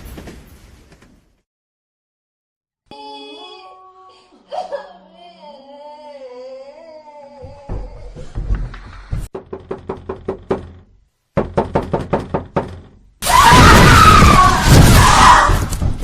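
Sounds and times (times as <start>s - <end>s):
rapid knocking on a door: 7.7s - 13.0s.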